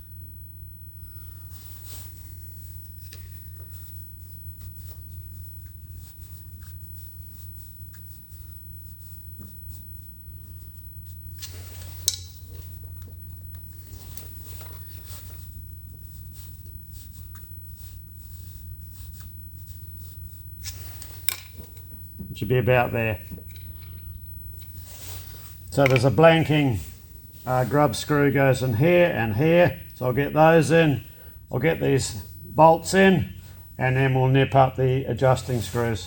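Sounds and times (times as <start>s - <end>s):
steady low hum: 0.0s - 36.0s
small metal parts clicking and scraping: 20.6s - 21.8s, 23.3s - 24.8s.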